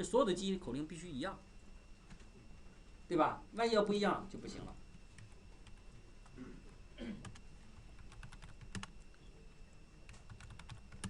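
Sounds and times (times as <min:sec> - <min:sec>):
faint keyboard keystrokes: 0:08.0 - 0:09.2, 0:10.0 - 0:11.0.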